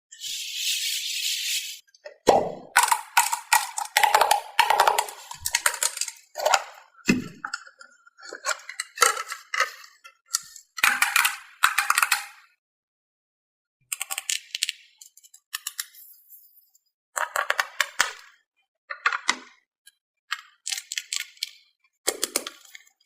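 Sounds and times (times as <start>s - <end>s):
plastic balls clattering: 2.6s - 12.4s.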